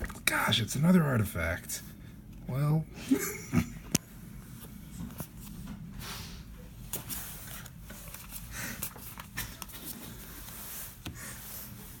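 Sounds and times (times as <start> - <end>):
cards rustling and clicking: 6.8 - 12.0.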